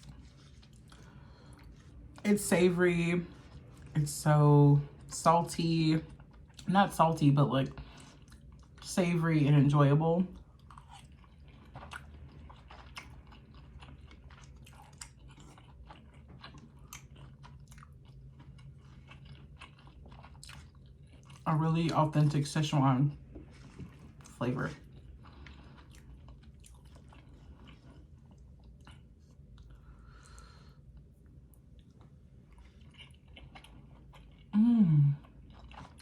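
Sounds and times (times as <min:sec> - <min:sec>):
person chewing noodles: 0:00.0 - 0:04.0, 0:06.1 - 0:06.7, 0:07.7 - 0:08.9, 0:10.3 - 0:22.3, 0:23.1 - 0:36.0
mouth sounds eating noodles: 0:34.5 - 0:35.4.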